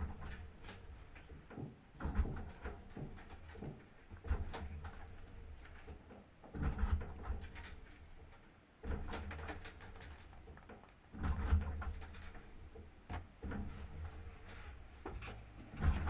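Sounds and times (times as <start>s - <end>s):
washing machine agitating: 2.0s - 7.7s, 11.1s - 16.0s.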